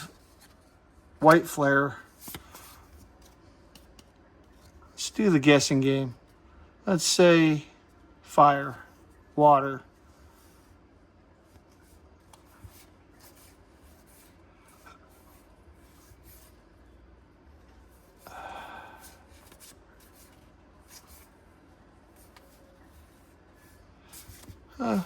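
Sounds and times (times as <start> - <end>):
trading cards rubbing and clicking: 11.6 - 16.7, 19.0 - 25.0.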